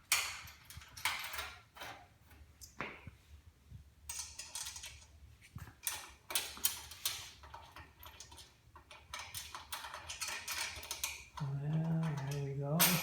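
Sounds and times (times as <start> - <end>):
small metal hardware clinking: 4.1 - 5.1, 5.8 - 13.0.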